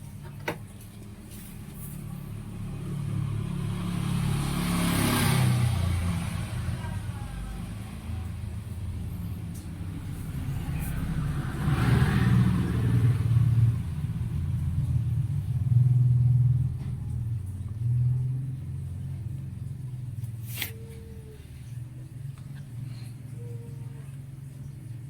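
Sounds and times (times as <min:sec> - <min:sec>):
car engine revving: 0:10.0 - 0:14.6.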